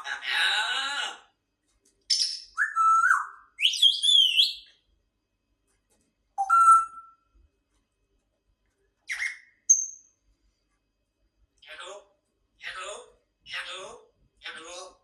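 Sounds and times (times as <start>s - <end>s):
parrot squawking: 0.0s - 1.2s, 2.1s - 4.7s, 6.4s - 7.2s, 9.1s - 9.6s
parrot warbling whistles: 2.1s - 4.7s, 6.4s - 7.2s, 9.1s - 9.6s.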